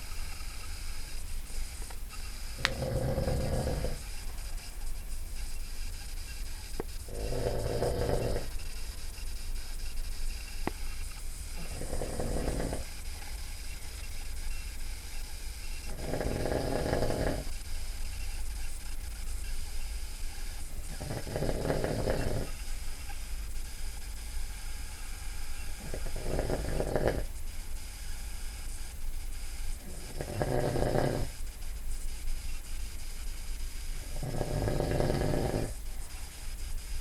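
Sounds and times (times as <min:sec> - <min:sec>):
man snoring loudly: 0:02.6 - 0:04.0, 0:07.1 - 0:08.5, 0:11.6 - 0:12.9, 0:15.9 - 0:17.5, 0:20.8 - 0:22.5, 0:25.8 - 0:27.3, 0:29.8 - 0:31.4, 0:34.0 - 0:35.8.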